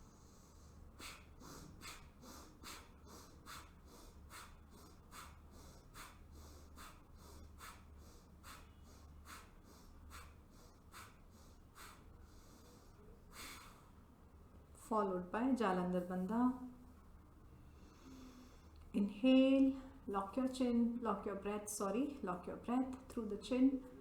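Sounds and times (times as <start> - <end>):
rapid forceful nostril breathing: 0.0 - 14.0, 17.6 - 18.8.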